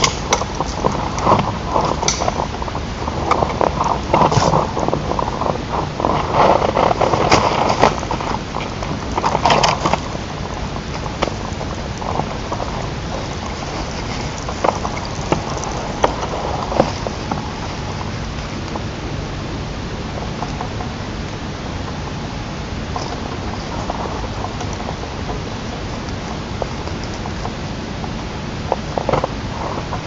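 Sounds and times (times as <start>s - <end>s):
rustling: 0.0s - 19.0s
steady outdoor hiss: 0.0s - 30.0s.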